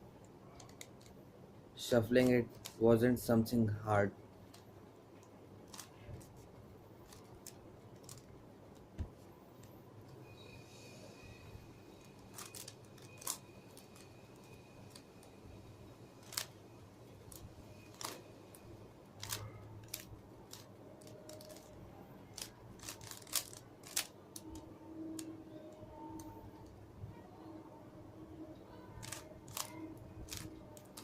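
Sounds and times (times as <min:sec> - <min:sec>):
puzzle cube plastic clicks: 0:12.3 - 0:15.1, 0:19.2 - 0:25.3, 0:29.0 - 0:31.0.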